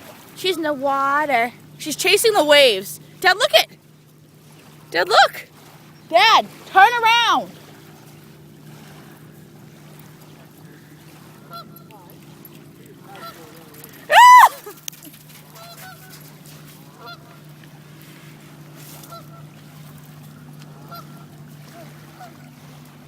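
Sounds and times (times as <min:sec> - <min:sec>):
low hum: 0:00.0 - 0:23.0
goose honking: 0:11.5 - 0:11.9, 0:13.1 - 0:13.5, 0:15.5 - 0:16.2, 0:16.9 - 0:17.4, 0:19.0 - 0:19.5, 0:20.8 - 0:22.4.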